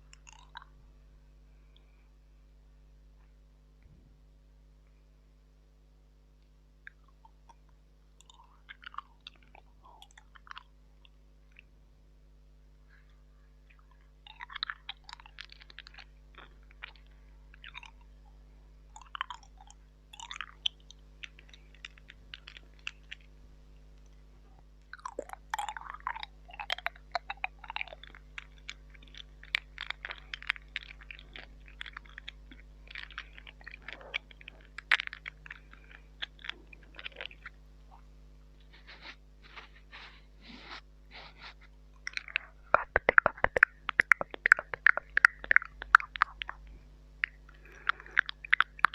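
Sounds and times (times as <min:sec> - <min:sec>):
wet mouth clicks and smacks: 0:00.0 - 0:00.8, 0:06.8 - 0:11.7, 0:13.7 - 0:18.3, 0:18.9 - 0:39.3, 0:41.2 - 0:48.9
faint electrical hum: 0:00.0 - 0:48.9.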